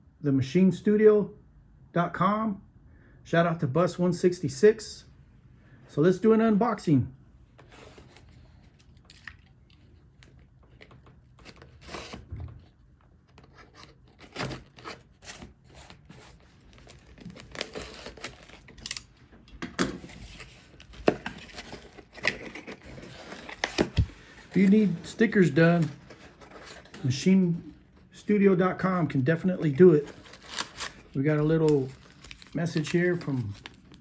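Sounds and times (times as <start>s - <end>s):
packaging tearing and crinkling: 11.4s - 12.2s, 13.4s - 19.2s, 20.0s - 27.0s, 29.5s - 34.0s.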